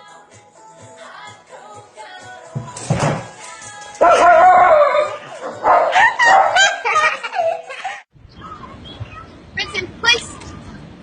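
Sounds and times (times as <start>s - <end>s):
dog crying loudly: 4.0s - 7.7s.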